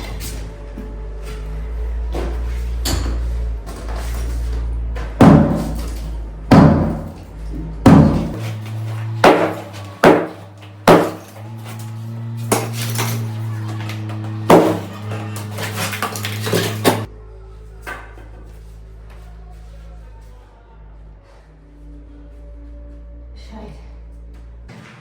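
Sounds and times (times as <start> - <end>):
sledgehammer smashing concrete blocks: 5.1 - 17.1.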